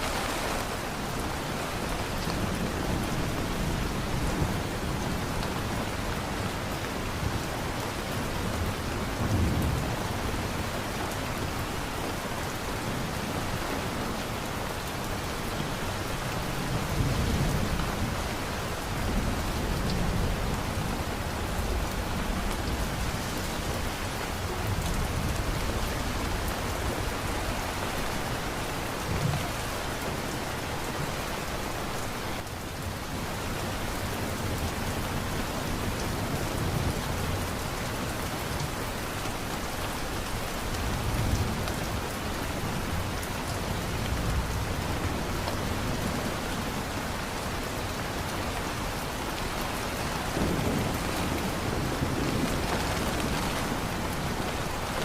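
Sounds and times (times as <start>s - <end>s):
heavy rain: 0.0s - 55.0s
low thunder rumbles: 50.2s - 55.0s.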